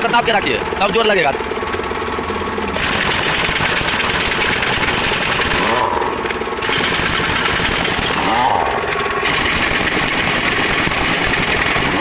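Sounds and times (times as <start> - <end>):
pneumatic impact wrench hammering: 2.8 - 12.0.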